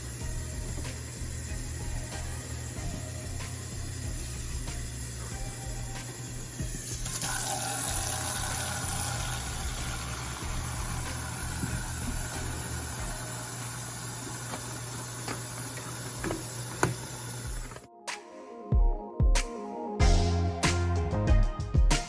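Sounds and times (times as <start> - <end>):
tap running into sink: 6.6 - 13.4, 14.1 - 17.9.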